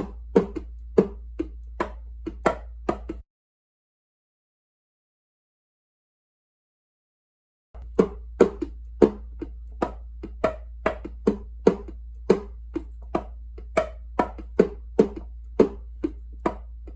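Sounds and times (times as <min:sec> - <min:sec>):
steady low hum: 0:07.8 - 0:16.9.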